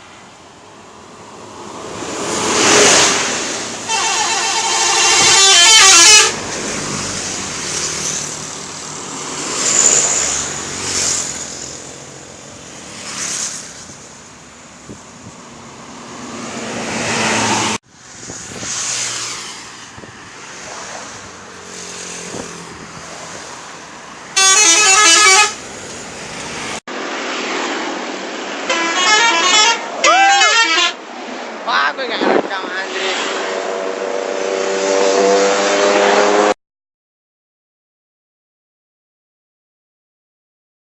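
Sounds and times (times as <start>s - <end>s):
traffic and road noise: 0.0s - 36.6s
vehicles passing: 0.0s - 36.6s
bus horns playing alternating notes: 2.8s - 7.3s, 24.3s - 25.9s, 28.6s - 31.0s.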